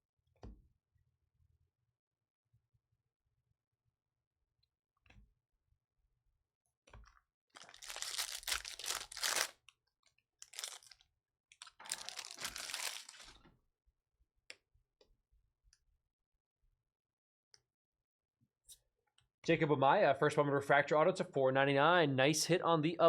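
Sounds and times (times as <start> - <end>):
wrappers torn open and crinkled: 7.6 - 9.7, 10.4 - 11.0, 11.6 - 13.4.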